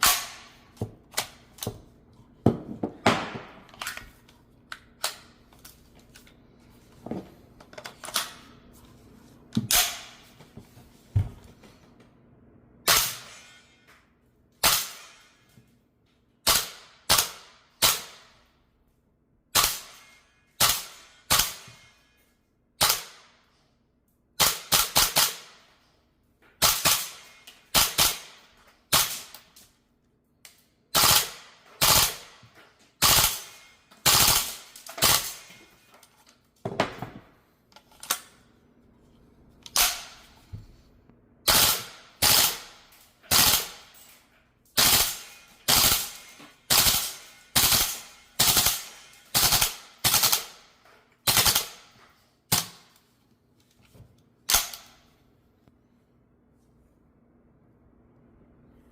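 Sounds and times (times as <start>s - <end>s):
airsoft rifle shots: 0.0s - 0.6s, 16.4s - 18.2s, 20.6s - 21.8s, 22.8s - 23.4s, 24.4s - 25.6s, 26.6s - 29.4s, 30.9s - 32.4s, 33.0s - 35.6s, 41.5s - 43.9s, 44.8s - 50.6s, 51.2s - 51.9s.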